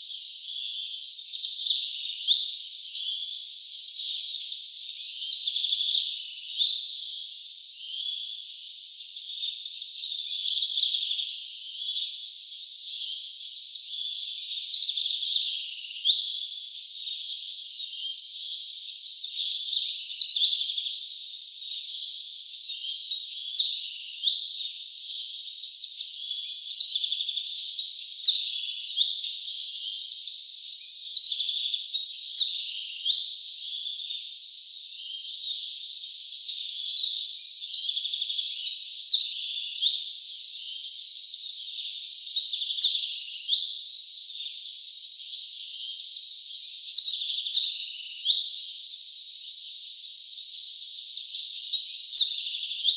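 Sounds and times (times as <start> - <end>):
crickets trilling: 5.8 - 52.9.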